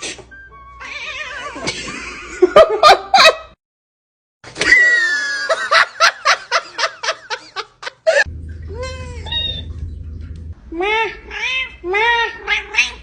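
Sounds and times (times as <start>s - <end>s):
hearty human laughter: 1.6s - 3.5s, 4.6s - 8.3s.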